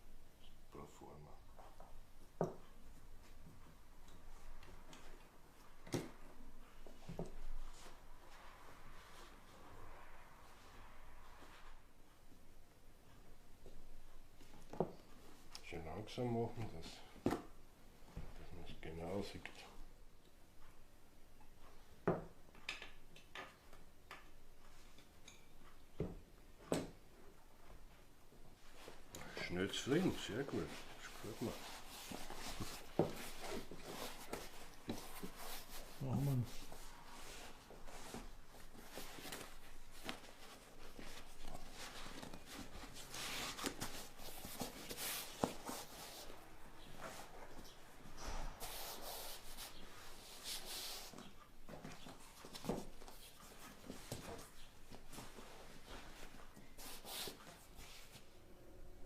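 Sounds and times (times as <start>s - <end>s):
hand rubbing and scraping: 28.5s - 58.3s.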